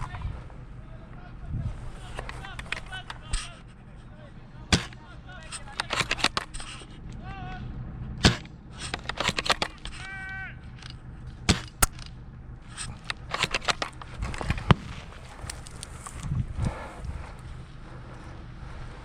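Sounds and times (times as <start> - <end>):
airsoft gunfire: 4.7 - 5.0, 8.2 - 10.0, 11.5 - 12.0.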